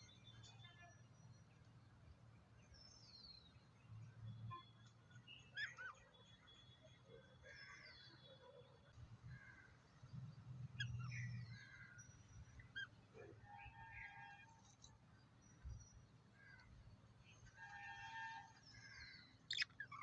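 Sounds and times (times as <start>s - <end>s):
lovebirds chirping: 18.5s - 20.0s.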